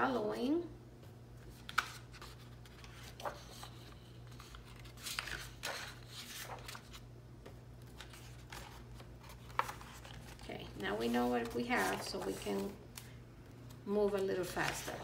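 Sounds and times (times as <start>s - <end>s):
paper pages rustling: 1.4s - 7.1s, 7.8s - 13.1s, 14.0s - 15.0s.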